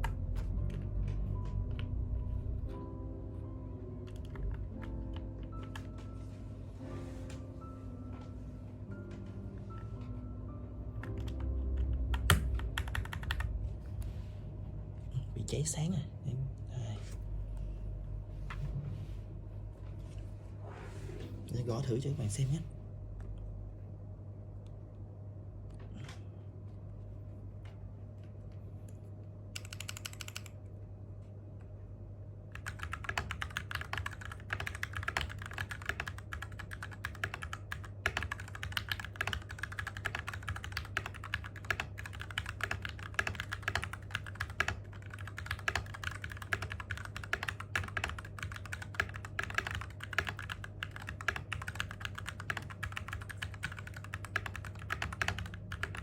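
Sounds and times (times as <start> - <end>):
mechanical keyboard typing: 4.0 - 6.0, 11.0 - 13.5, 29.6 - 30.6, 32.5 - 56.0.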